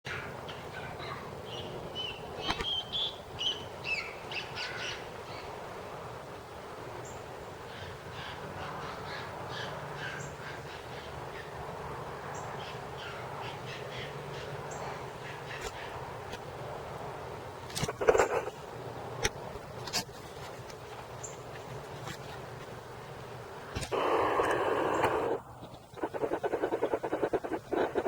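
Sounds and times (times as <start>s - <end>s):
birds harsh calls: 0.1s - 5.7s, 7.0s - 16.4s, 17.8s - 18.6s, 23.9s - 28.0s
steady background rush: 22.8s - 28.0s.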